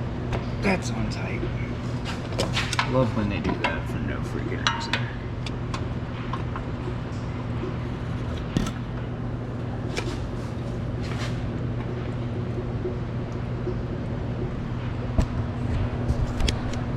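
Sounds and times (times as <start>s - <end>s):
steady low hum: 0.0s - 16.9s
tools scraping and clinking: 8.0s - 8.9s.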